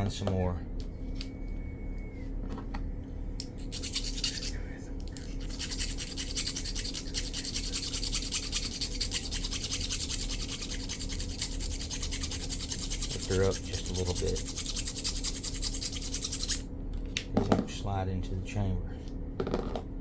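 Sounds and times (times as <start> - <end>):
hand file scraping metal pins: 3.6 - 16.6.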